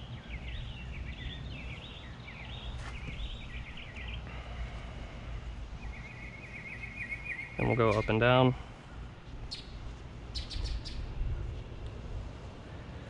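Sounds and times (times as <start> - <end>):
birds chirping rapidly: 0.0 - 11.8
low outdoor rumble: 0.0 - 13.0.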